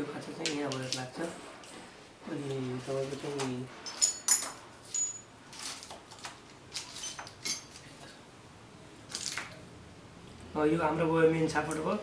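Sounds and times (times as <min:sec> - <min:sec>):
metal gears clinking: 0:03.8 - 0:05.3.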